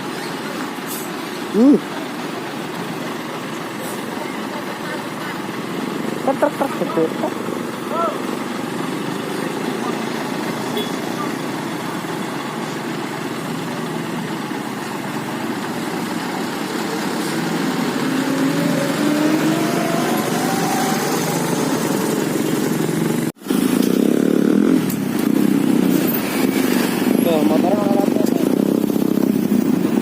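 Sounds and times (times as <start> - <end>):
diesel truck engine straining: 0.0 - 30.0
traffic noise: 0.0 - 30.0.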